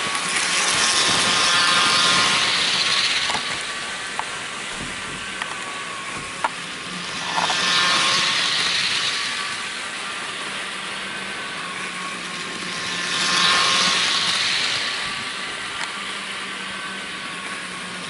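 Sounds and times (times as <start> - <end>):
model train motor whir: 0.0 - 18.0
model train wheels on rails: 0.0 - 18.0.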